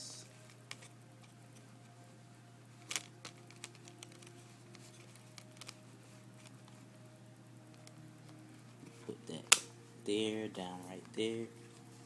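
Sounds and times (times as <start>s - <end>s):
faint low hum: 0.0s - 12.0s
plastic disc cases clicking: 2.8s - 5.8s, 9.4s - 9.7s
sharp plastic snap: 9.5s - 9.8s.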